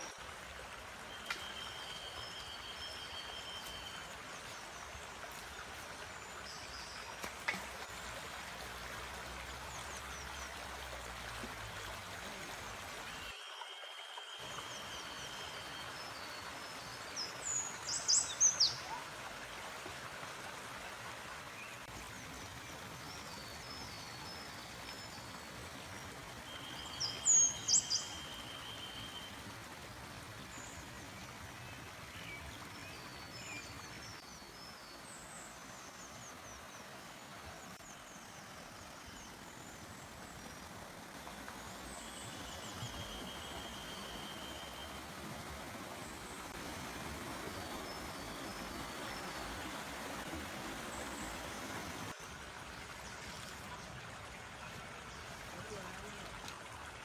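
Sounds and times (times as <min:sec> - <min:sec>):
forest stream rushing: 0:00.0 - 0:57.0
birds calling: 0:22.2 - 0:34.1.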